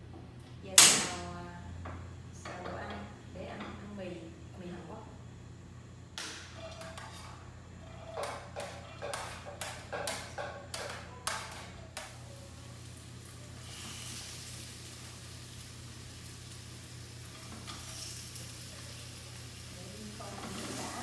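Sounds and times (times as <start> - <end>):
steady low hum: 0.0 - 20.3
utensils knocking on cookware: 6.2 - 12.2
food sizzling in a pan: 6.2 - 21.0.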